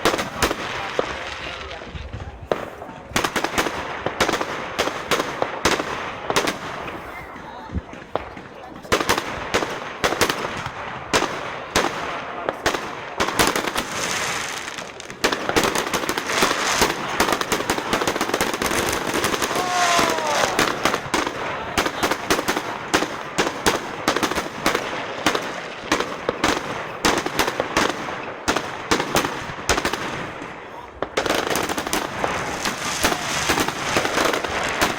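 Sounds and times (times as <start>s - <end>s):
fireworks bangs and crackling: 0.0s - 34.9s
whistling firework: 12.8s - 30.5s, 31.1s - 34.9s.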